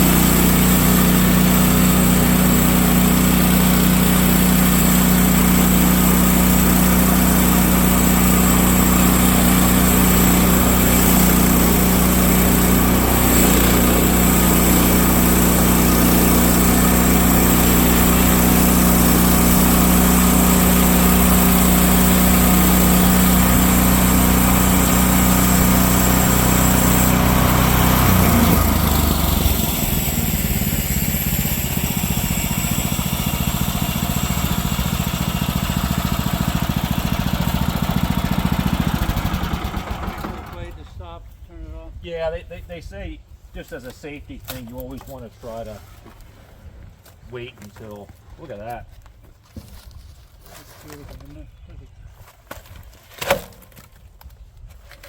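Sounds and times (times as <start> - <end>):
saw blade cutting log: 0.0 - 40.7
sawmill engine running: 0.0 - 41.0.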